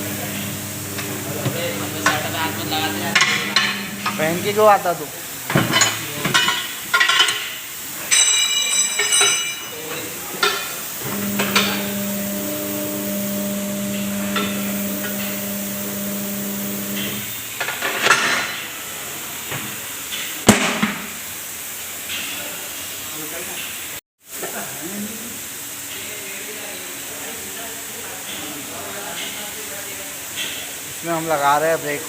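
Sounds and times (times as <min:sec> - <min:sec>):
electric motor humming: 0:00.0 - 0:04.8, 0:11.0 - 0:17.4
metal tools clinking on wheel rim: 0:05.7 - 0:10.8.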